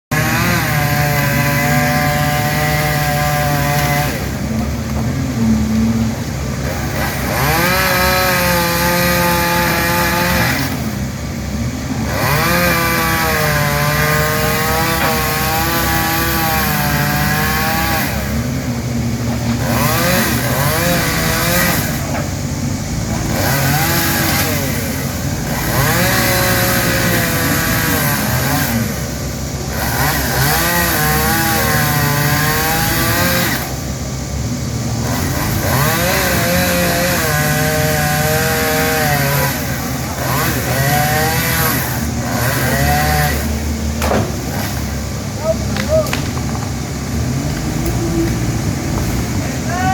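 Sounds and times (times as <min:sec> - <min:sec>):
chainsaw cutting branches: 0:00.1 - 0:34.1, 0:34.9 - 0:49.5
low engine running: 0:41.8 - 0:49.9.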